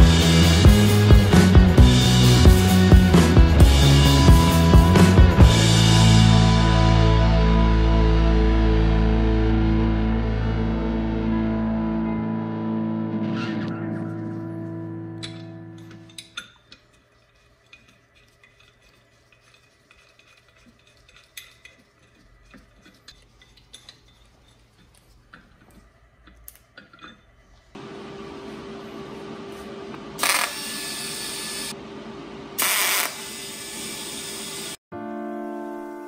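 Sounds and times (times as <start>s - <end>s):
power tool humming: 29.9s - 31.8s, 32.6s - 34.8s
hissing bursts cutting metal: 32.6s - 34.8s.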